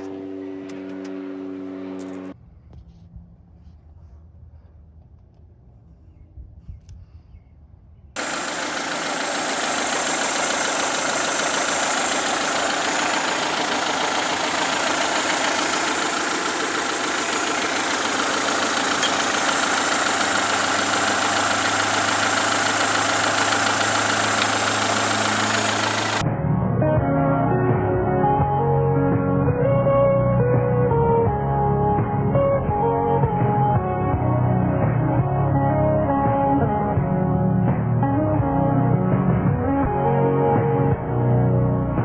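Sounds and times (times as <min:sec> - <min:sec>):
car engine idling: 0:08.2 - 0:26.2.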